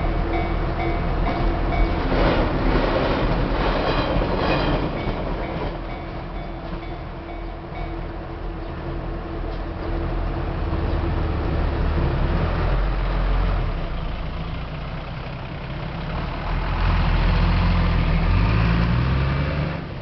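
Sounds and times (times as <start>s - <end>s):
engine accelerating: 15.8s - 20.0s
vehicle engines passing: 15.9s - 20.0s.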